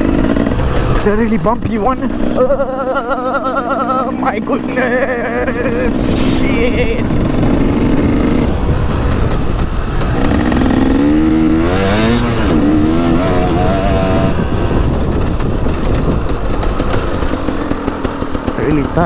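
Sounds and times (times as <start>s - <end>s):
dirt bike engine revving: 0.0s - 19.0s
wind on microphone: 5.8s - 17.6s.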